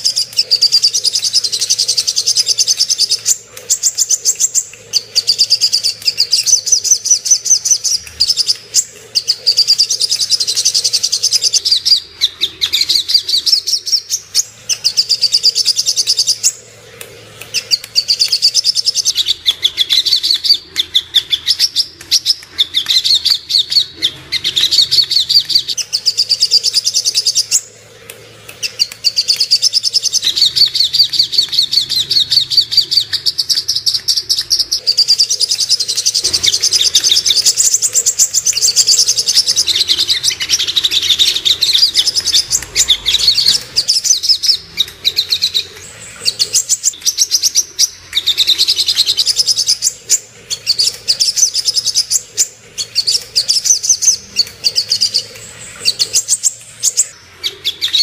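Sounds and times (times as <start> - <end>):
sunbird chirping: 0.0 - 58.0.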